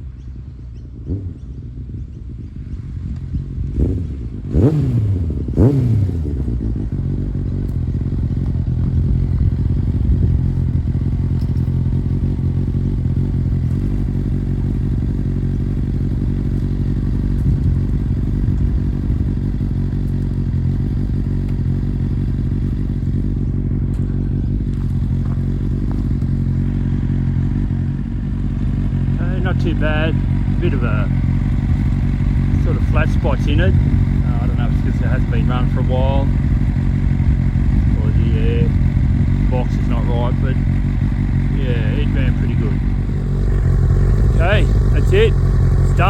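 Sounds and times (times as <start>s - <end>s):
motorcycle engine revving: 0.0s - 46.0s.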